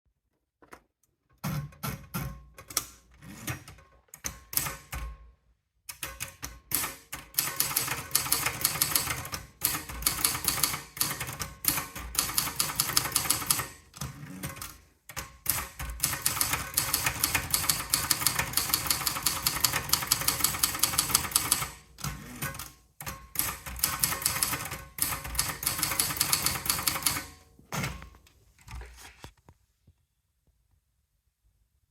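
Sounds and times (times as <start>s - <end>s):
typewriter key strikes: 5.9s - 13.8s, 14.4s - 21.8s, 22.4s - 27.4s.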